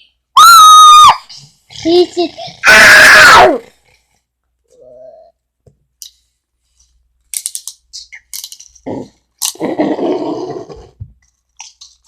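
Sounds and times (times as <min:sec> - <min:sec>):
child making mouth noises: 0:04.7 - 0:05.4.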